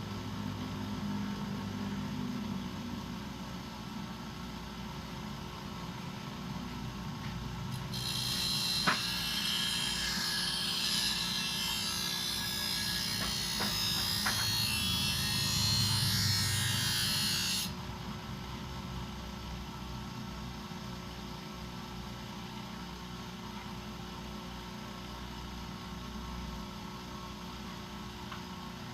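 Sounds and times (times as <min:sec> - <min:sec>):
bench grinder humming: 0:07.7 - 0:17.7.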